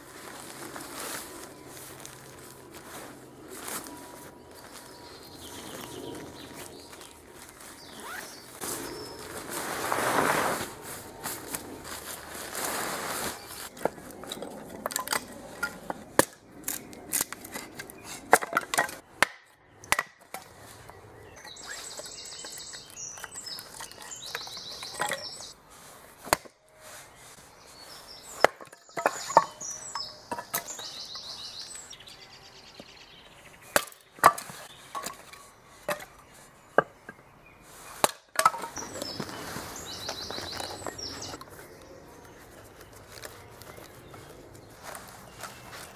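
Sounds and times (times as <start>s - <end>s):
sticks snapping and chopped: 13.7s - 20.6s, 26.2s - 26.6s, 33.7s - 35.2s, 38.0s - 39.2s.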